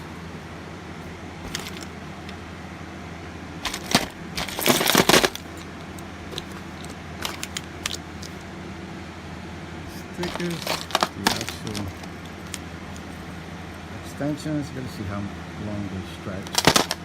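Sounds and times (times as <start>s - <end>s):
packaging crinkling rattle: 1.4s - 1.9s, 3.6s - 5.7s, 6.3s - 8.4s, 10.2s - 12.6s, 16.5s - 17.0s
plastic parts clicking and clattering: 1.4s - 1.9s, 3.6s - 8.4s, 10.2s - 12.6s, 16.4s - 17.0s.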